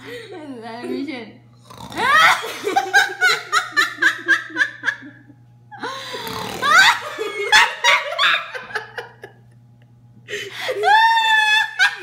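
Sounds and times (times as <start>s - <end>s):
people laughing: 2.0s - 9.4s, 10.3s - 12.0s.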